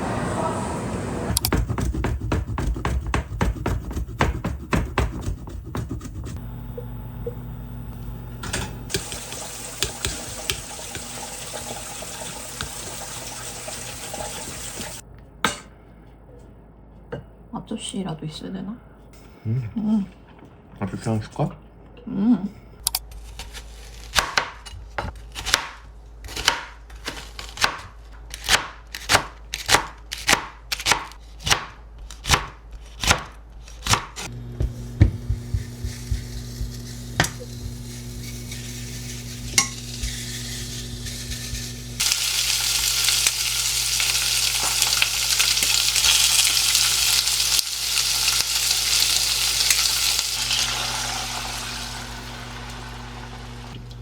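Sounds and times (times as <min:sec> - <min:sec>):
steady low hum: 0:00.0 - 0:09.0, 0:34.3 - 0:42.0
knife chopping on cutting board: 0:01.4 - 0:06.4, 0:08.5 - 0:11.1, 0:24.2 - 0:37.5
running water: 0:08.7 - 0:15.0.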